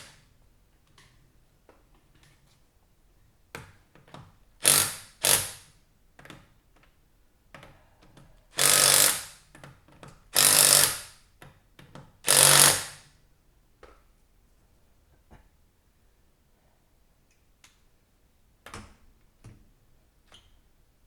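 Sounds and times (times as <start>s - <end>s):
impact wrench hammering: 4.6s - 5.6s, 8.6s - 9.4s, 10.4s - 11.1s, 12.3s - 13.0s.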